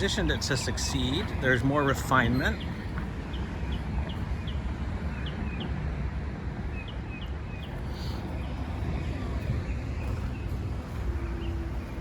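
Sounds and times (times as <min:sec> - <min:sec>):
steady low rumble: 0:05.8 - 0:12.0
small birds chirping: 0:09.5 - 0:12.0.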